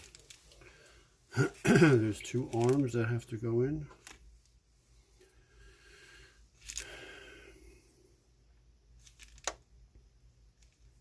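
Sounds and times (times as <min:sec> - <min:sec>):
handling small plastic parts: 0:00.0 - 0:00.7, 0:02.2 - 0:03.2, 0:03.8 - 0:04.6, 0:06.6 - 0:07.0, 0:09.0 - 0:09.7, 0:10.5 - 0:11.0.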